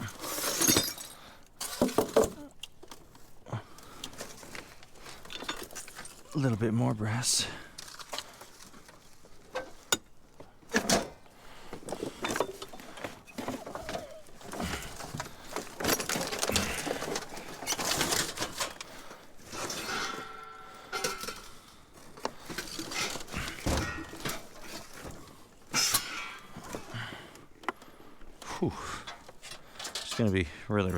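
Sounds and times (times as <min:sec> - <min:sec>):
scrap metal knocking and clinking: 0:11.8 - 0:25.1.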